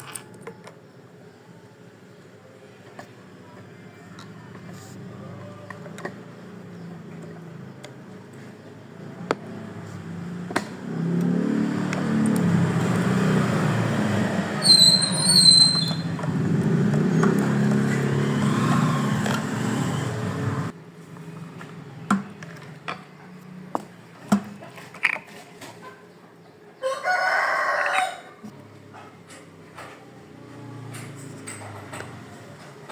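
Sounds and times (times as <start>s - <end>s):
high chirps: 14.6s - 16.3s.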